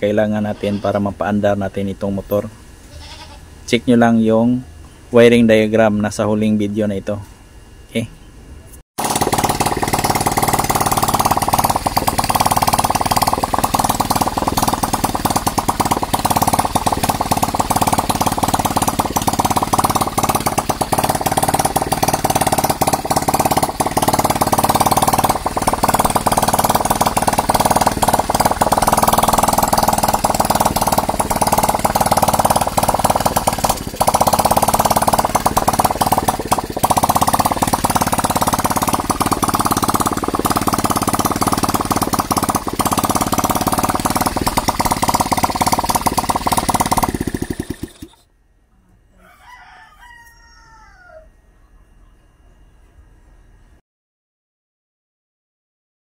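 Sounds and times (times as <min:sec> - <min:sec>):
motorcycle engine running: 0:09.0 - 0:48.3.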